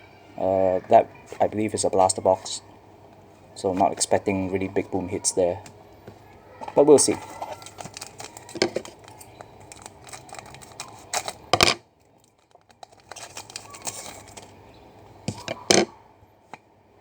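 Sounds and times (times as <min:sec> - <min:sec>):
wrappers crinkling and tearing: 0:07.0 - 0:14.6
cards clicking and sliding: 0:07.1 - 0:11.8, 0:12.8 - 0:14.6.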